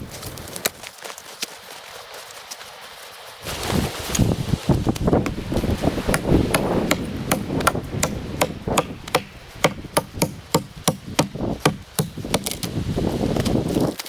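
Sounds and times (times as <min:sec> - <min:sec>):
rapid knocking strikes: 0:05.2 - 0:12.6.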